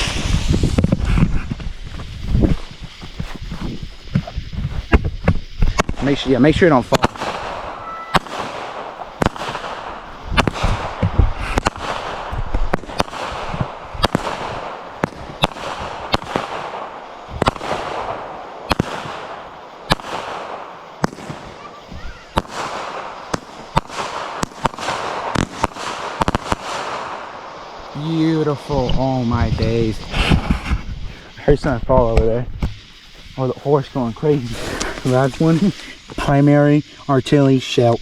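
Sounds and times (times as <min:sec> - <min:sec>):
firework cake bangs: 0:00.0 - 0:29.5
firework crackling and hissing: 0:00.0 - 0:38.0.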